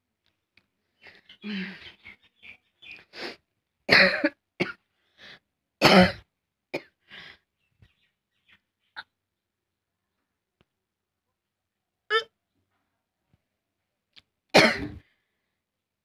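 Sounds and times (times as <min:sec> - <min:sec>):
person coughing: 0:03.9 - 0:04.8, 0:05.8 - 0:06.2, 0:14.6 - 0:15.1.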